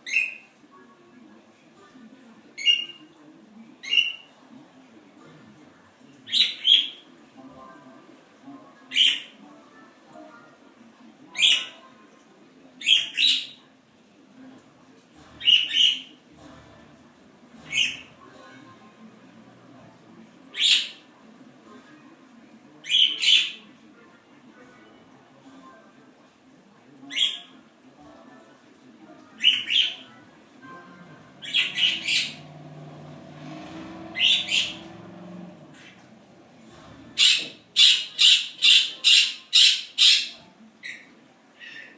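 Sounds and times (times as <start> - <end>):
parrot squawking harshly: 31.4 - 32.4, 37.2 - 40.3.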